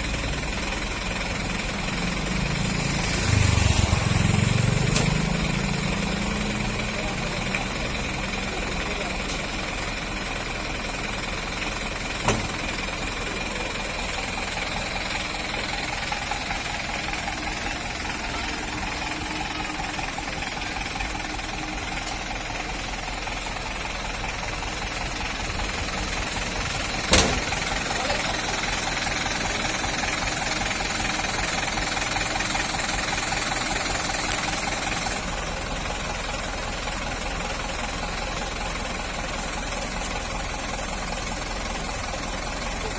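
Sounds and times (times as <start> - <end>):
diesel truck engine running: 0.0 - 42.9.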